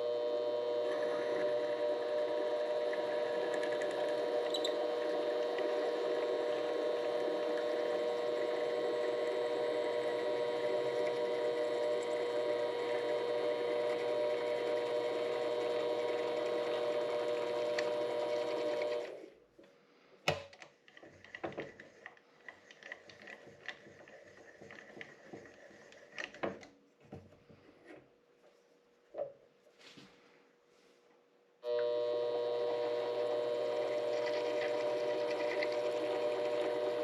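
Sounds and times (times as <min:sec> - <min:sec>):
lathe running: 0:00.0 - 0:19.2, 0:31.6 - 0:37.0.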